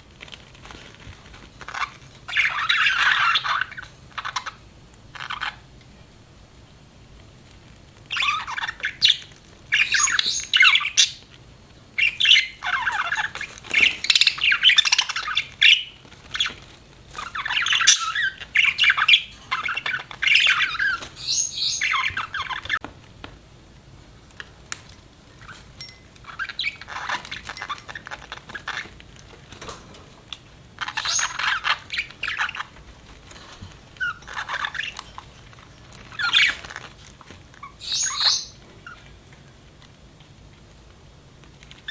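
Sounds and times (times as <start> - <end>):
budgerigars chirping: 1.7 - 4.6, 5.2 - 5.6, 8.1 - 11.3, 12.0 - 22.8, 26.3 - 28.9, 30.8 - 32.8, 34.0 - 35.3, 36.1 - 36.7, 37.6 - 39.1.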